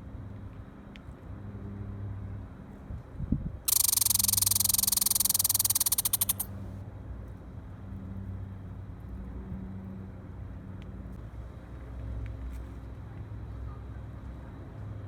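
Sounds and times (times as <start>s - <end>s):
squirrel rapid chirping call: 3.7s - 6.5s.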